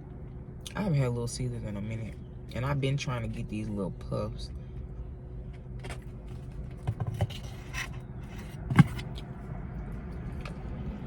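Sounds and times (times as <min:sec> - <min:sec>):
steady low hum: 0:00.0 - 0:11.0
handling clicks and scrapes: 0:05.6 - 0:09.4.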